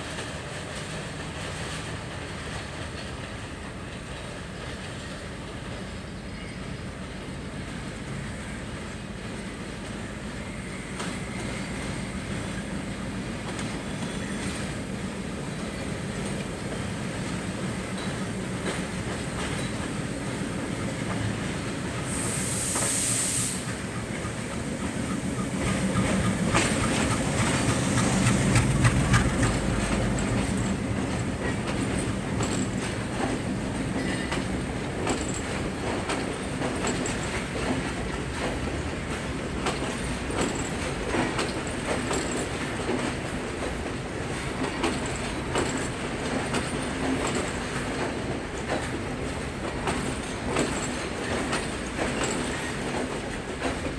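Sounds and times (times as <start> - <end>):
low train rumble: 0.0 - 53.9
wheels clicking over rail joints: 9.4 - 53.9
brief hiss: 20.6 - 27.4.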